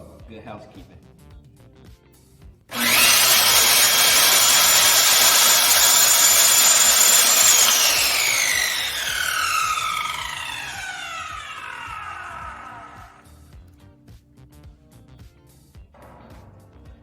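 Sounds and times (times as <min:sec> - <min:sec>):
circular saw cutting wood: 0:02.7 - 0:13.2.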